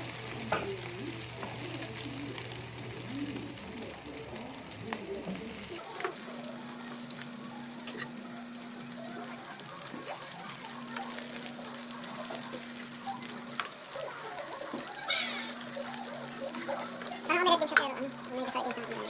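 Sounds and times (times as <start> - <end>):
oil pops and crackles: 0.0 - 18.8
food sizzling in hot oil: 0.0 - 19.0.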